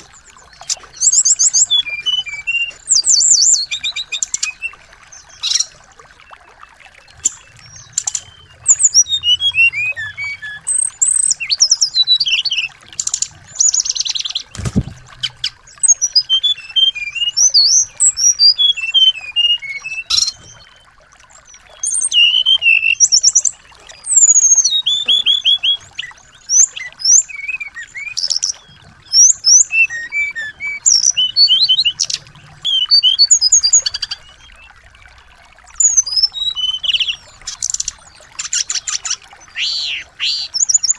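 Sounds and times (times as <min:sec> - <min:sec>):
songbirds chirping and trilling: 0:00.0 - 0:40.9
brief thump: 0:14.5 - 0:15.4.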